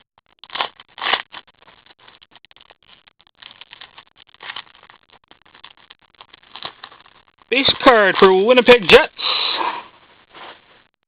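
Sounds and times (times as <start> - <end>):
wrapper crinkling: 0.2 - 9.0
cards rustling: 0.4 - 9.0.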